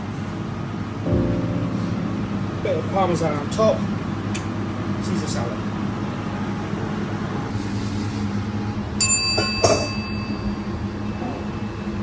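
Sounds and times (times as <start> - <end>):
steady low hum: 0.0 - 12.0
service bell ringing: 9.0 - 10.7.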